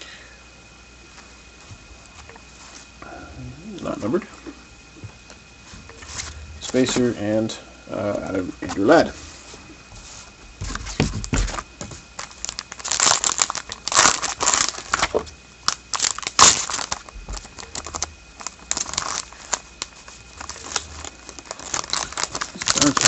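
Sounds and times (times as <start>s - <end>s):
foil wrapper crinkling and tearing: 10.7s - 23.0s.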